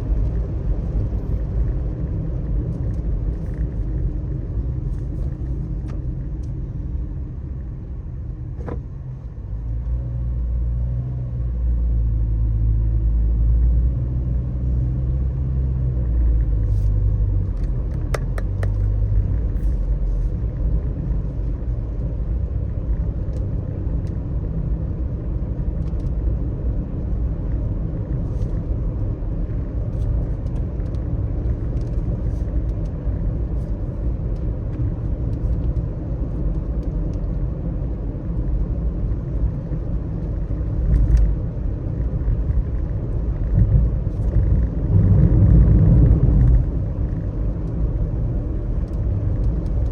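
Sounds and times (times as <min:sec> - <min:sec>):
car driving on wet road: 0:13.5 - 0:49.9.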